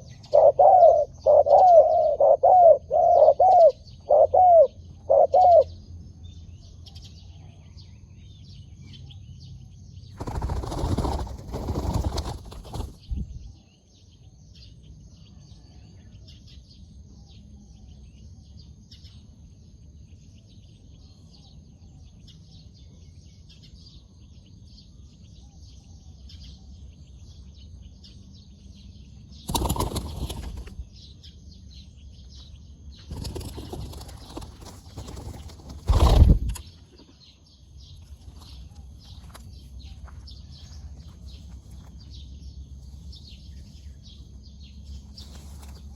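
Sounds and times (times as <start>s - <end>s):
faint birds chirping: 0.0s - 45.9s
dove wings flapping: 10.2s - 13.2s, 29.5s - 30.9s, 33.1s - 36.6s.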